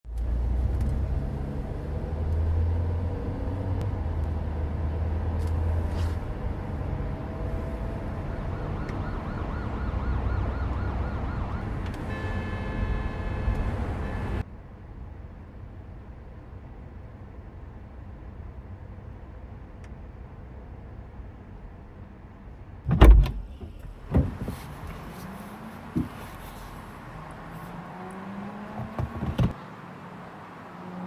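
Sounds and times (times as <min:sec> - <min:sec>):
heavy vehicle rumble: 0:00.1 - 0:29.7
siren wailing: 0:07.1 - 0:14.4.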